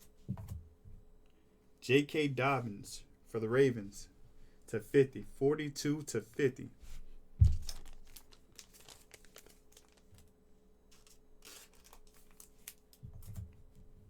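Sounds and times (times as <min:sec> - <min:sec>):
cards and packaging rustling: 0:07.5 - 0:10.3, 0:10.9 - 0:13.5.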